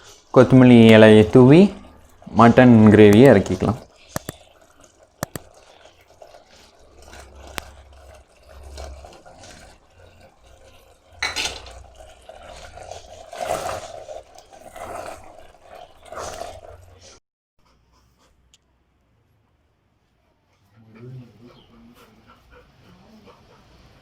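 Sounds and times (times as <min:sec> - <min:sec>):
metal spoon scraping pot: 0:00.0 - 0:17.2.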